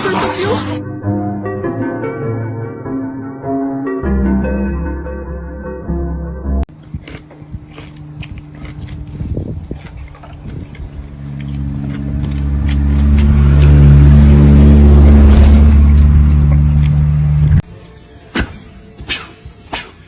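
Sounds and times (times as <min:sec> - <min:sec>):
loud low drone: 0:10.4 - 0:17.7.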